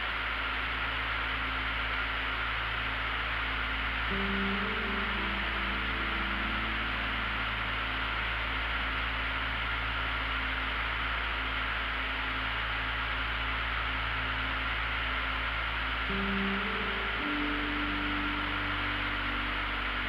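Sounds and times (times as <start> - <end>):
light aircraft engine drone: 0.0 - 20.0
faint held music notes: 2.7 - 10.1, 15.4 - 20.0.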